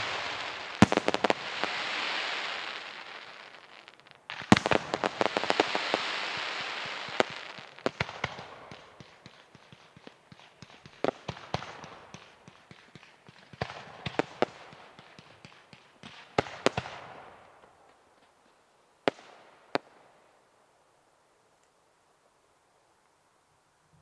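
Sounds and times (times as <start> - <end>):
fireworks bangs: 0.0 - 18.0.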